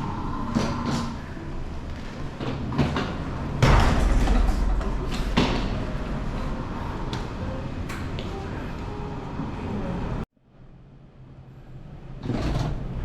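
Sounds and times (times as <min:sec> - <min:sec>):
low rumble: 0:03.0 - 0:10.3
door shutting with heavy thud: 0:03.6 - 0:06.8.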